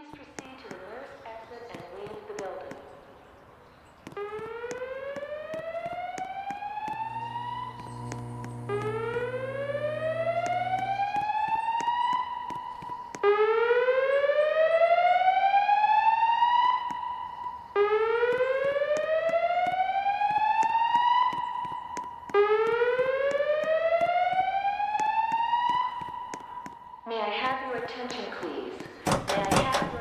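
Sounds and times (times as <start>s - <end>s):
fire alarm whoop tone: 4.4s - 17.0s.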